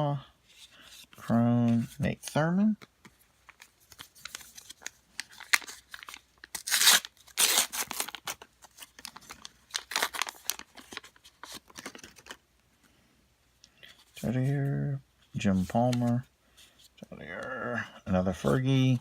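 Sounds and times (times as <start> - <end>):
cards being handled: 0.5 - 12.4, 15.5 - 17.5
wrapper crinkling and tearing: 3.5 - 12.4.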